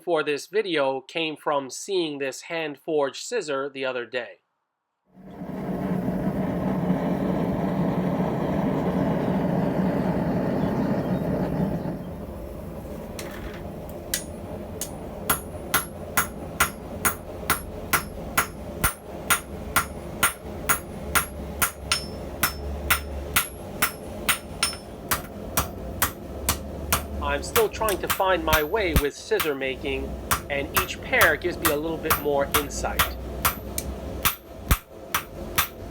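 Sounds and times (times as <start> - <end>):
hammer striking steel on anvil: 14.1 - 35.9.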